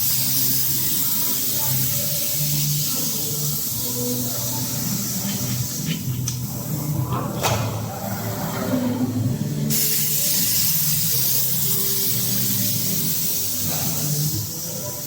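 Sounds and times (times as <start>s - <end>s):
machine high hiss: 0.0s - 5.9s, 9.6s - 15.0s.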